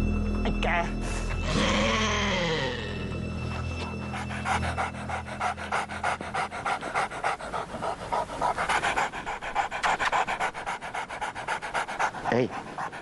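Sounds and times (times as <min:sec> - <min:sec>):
dog panting: 0:03.4 - 0:13.0.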